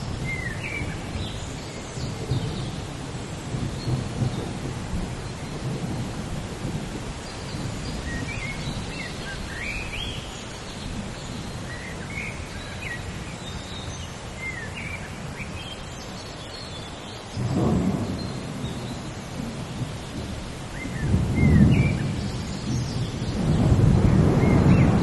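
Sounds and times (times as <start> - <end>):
steady rain: 0.0 - 25.0
thunder rumble: 17.4 - 25.0.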